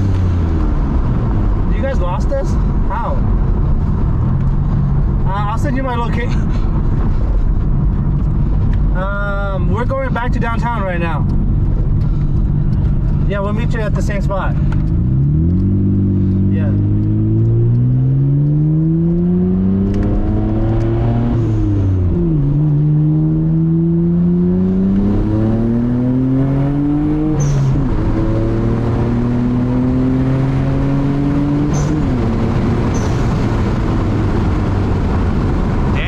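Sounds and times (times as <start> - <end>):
car engine revving through gears: 9.8 - 36.0.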